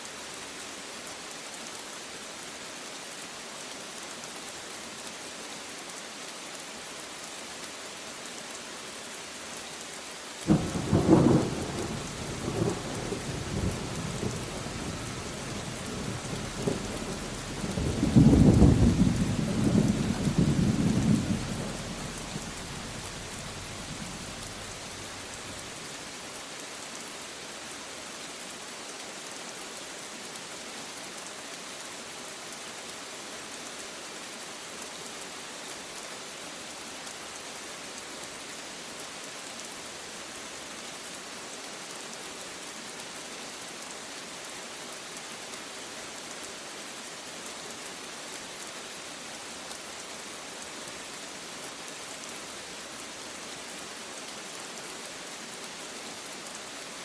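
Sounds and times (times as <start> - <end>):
steady rain: 0.0 - 57.0
thunder rumbling: 10.5 - 25.3.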